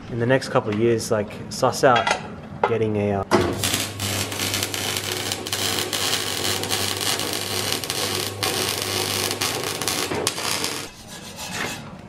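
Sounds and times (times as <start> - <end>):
low electrical hum: 0.0 - 12.0
welding arc hiss: 3.5 - 11.0.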